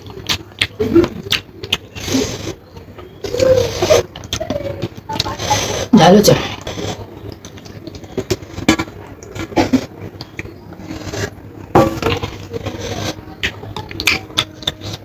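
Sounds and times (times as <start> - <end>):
chewing: 0.0 - 15.0
food scraping on a plate: 5.3 - 15.0.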